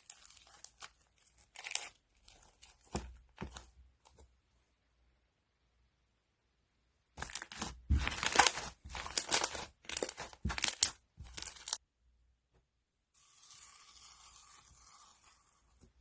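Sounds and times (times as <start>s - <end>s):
crunchy slime crackling: 0.0s - 3.6s, 7.2s - 11.8s.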